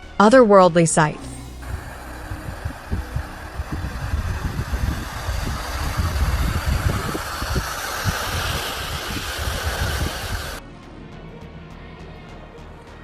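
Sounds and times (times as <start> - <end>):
wind buffeting microphone: 1.6 - 10.6.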